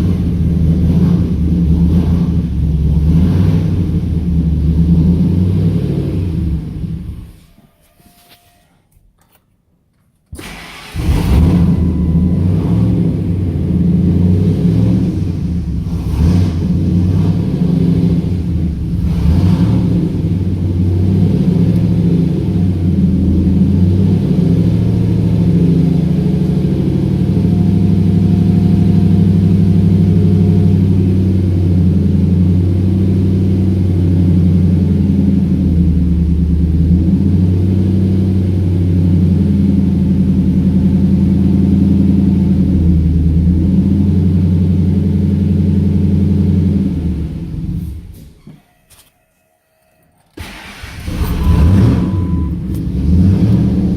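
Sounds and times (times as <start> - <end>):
supercharged engine idling: 10.4 - 48.4, 50.4 - 53.9.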